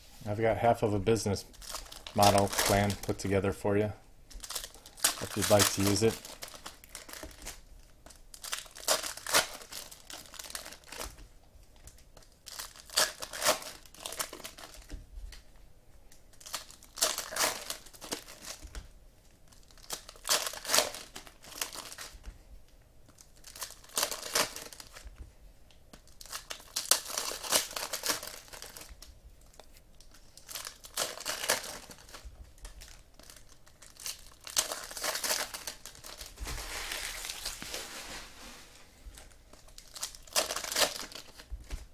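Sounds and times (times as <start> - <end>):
foil wrappers crinkling and tearing: 1.5 - 3.4, 4.4 - 11.2, 11.9 - 14.9, 16.3 - 18.7, 19.5 - 22.2, 23.2 - 25.0, 25.9 - 41.9.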